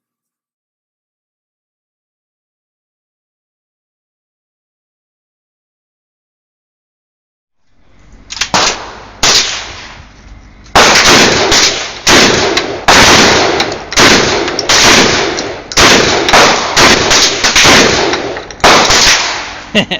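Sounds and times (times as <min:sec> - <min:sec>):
shotgun shots echoing: 0:08.4 - 0:10.0, 0:10.7 - 0:19.7.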